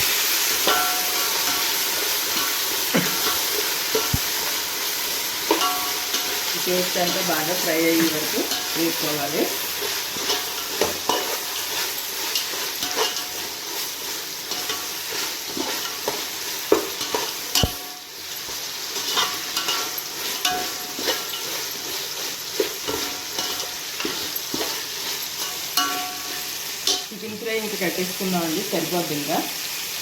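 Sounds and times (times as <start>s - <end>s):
paste sizzling in hot oil: 0.0s - 30.0s
utensil scraping and knocking pan: 9.8s - 27.1s.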